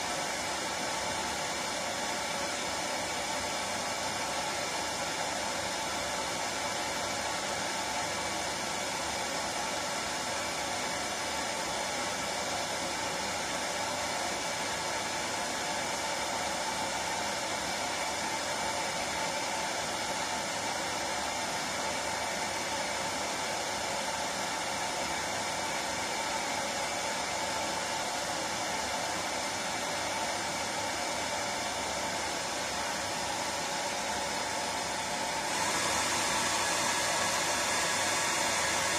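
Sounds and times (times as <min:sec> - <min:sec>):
hair dryer running: 0:00.0 - 0:38.9.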